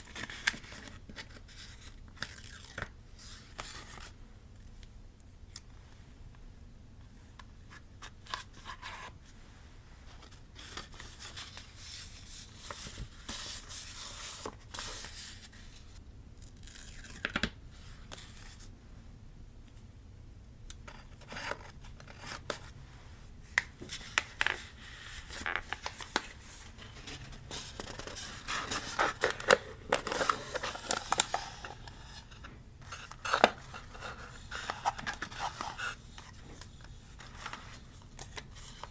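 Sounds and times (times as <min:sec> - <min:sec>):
paper crinkling: 0:23.8 - 0:38.9.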